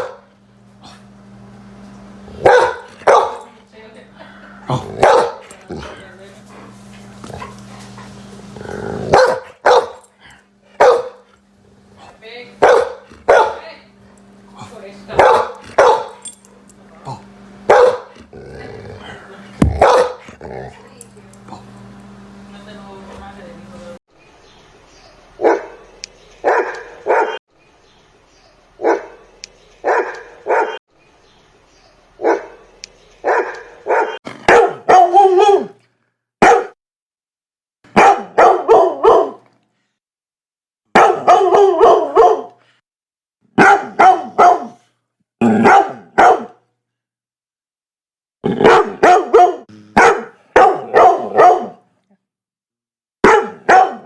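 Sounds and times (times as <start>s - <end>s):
dogs barking: 0.0s - 0.3s, 2.3s - 3.6s, 4.7s - 5.9s, 9.0s - 10.1s, 10.8s - 11.3s, 12.6s - 13.7s, 15.1s - 16.4s, 17.7s - 18.3s, 19.6s - 20.8s, 25.4s - 25.8s, 26.4s - 27.4s, 28.8s - 29.2s, 29.8s - 30.8s, 32.2s - 32.6s, 33.2s - 35.8s, 36.4s - 36.8s, 37.9s - 39.4s, 40.9s - 42.6s, 43.6s - 44.8s, 45.4s - 46.6s, 48.4s - 51.8s, 53.2s - 54.0s.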